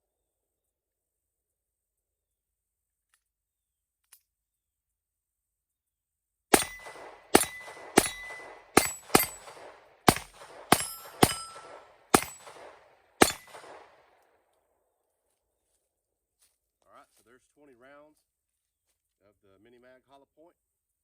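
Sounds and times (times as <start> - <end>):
pistol shots: 6.5 - 14.2.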